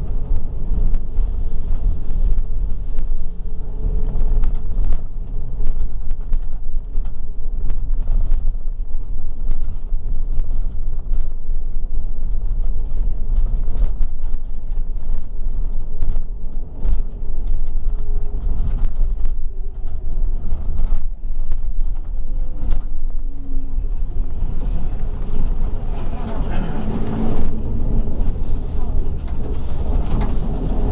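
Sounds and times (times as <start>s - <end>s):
bus engine and road rumble: 0.0s - 30.9s
faint whine: 0.0s - 30.9s
rattles and knocks from bus body: 12.2s - 23.3s, 23.9s - 30.9s.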